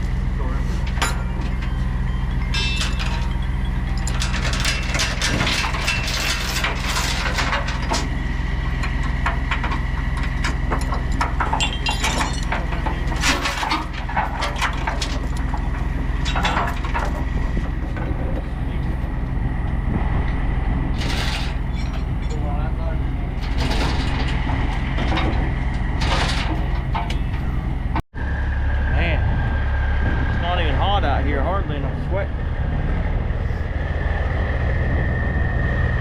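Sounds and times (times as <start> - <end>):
low engine hum: 0.0 - 36.0
metal chain clanking and rattling: 0.8 - 19.0, 21.0 - 28.0.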